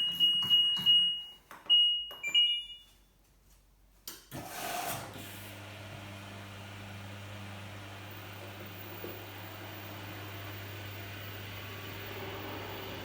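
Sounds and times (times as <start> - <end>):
dryer fan humming: 7.5 - 13.0.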